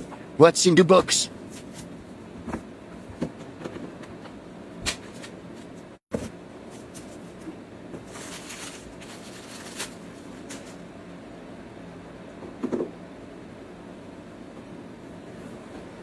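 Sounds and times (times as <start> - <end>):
low room hum: 0.0 - 16.0
wrapping paper rustling: 8.0 - 10.8.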